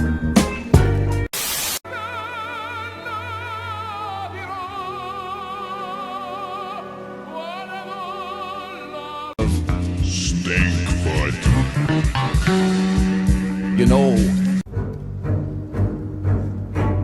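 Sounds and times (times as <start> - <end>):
operatic singing with vibrato: 1.9 - 14.6
guitar music: 9.4 - 14.6.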